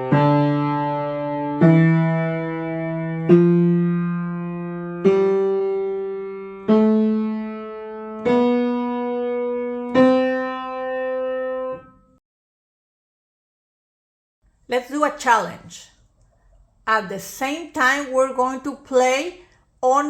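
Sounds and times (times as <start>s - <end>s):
piano single notes: 0.0s - 12.2s.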